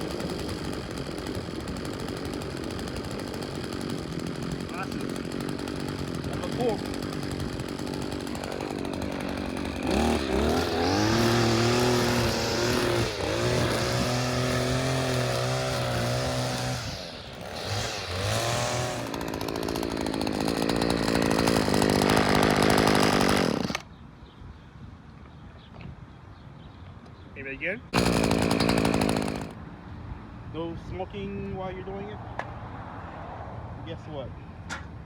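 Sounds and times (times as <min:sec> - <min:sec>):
string trimmer engine revving: 0:00.0 - 0:23.8, 0:27.9 - 0:29.6.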